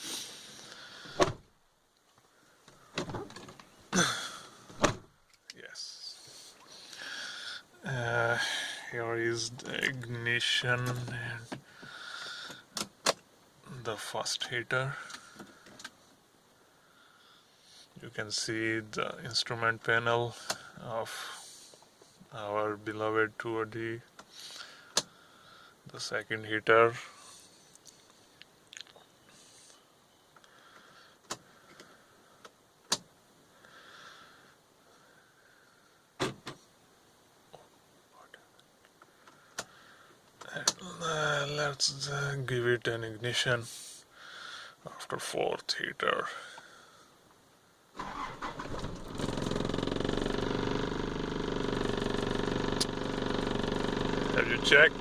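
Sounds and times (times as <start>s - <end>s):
starter motor cranking: 48.0s - 55.0s
diesel engine idling: 48.1s - 55.0s.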